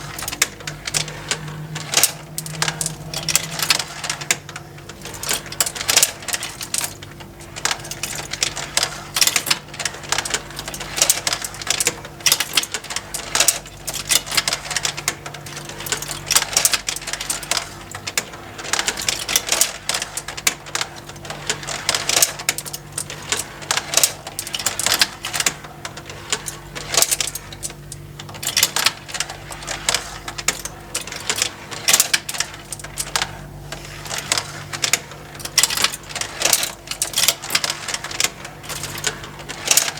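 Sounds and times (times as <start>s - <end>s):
low motor hum: 0.0s - 4.9s.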